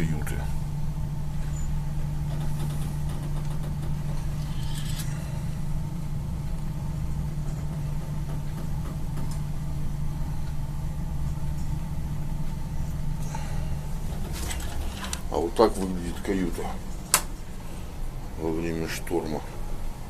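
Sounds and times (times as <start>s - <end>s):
ship engine drone: 0.0s - 20.0s
faint rattles: 1.4s - 5.4s.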